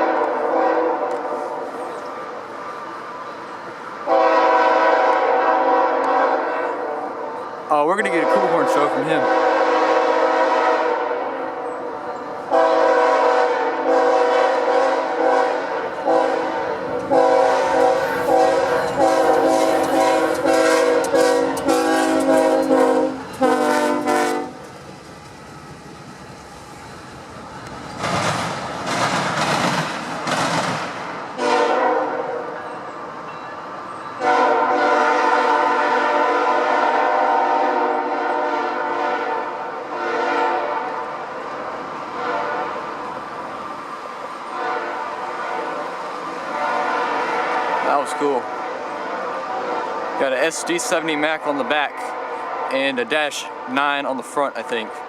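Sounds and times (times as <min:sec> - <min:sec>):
locomotive air horn blasts: 0:00.0 - 0:01.6, 0:04.1 - 0:07.1, 0:08.1 - 0:11.4, 0:12.5 - 0:24.6, 0:31.4 - 0:32.4, 0:34.2 - 0:41.0, 0:42.2 - 0:42.8, 0:44.5 - 0:45.9, 0:46.5 - 0:50.1
train rushing past: 0:00.0 - 0:55.0.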